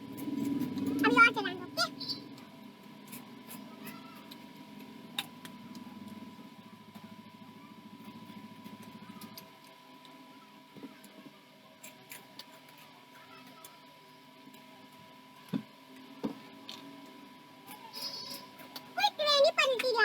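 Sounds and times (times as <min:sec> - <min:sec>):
steady high whine: 0:00.0 - 0:13.0.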